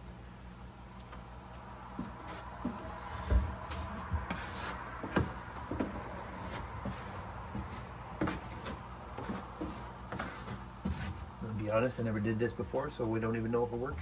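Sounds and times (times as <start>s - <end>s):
light knocks and rubbing: 2.0s - 11.7s.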